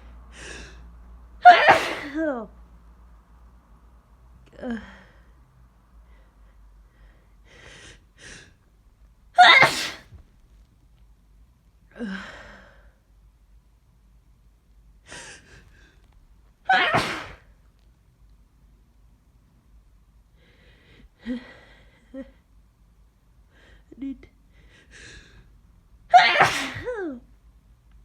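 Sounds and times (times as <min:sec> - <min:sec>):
person sneezing: 0:01.4 - 0:02.2, 0:09.4 - 0:10.2, 0:16.7 - 0:17.5, 0:26.1 - 0:27.0.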